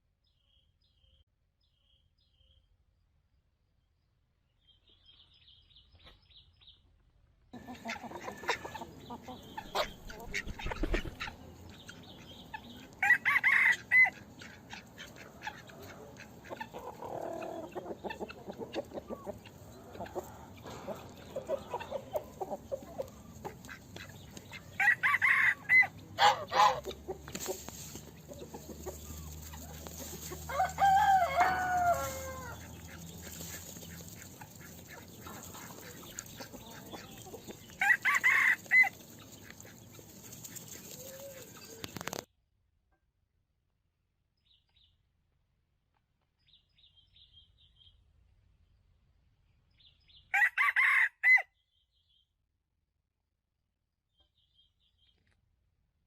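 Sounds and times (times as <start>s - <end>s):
chicken squawks: 7.6s - 27.6s, 28.3s - 39.8s
chickens clucking: 7.6s - 42.3s
rooster crowing: 13.0s - 14.2s, 24.8s - 26.8s, 30.4s - 32.7s, 37.8s - 38.9s, 50.3s - 51.5s.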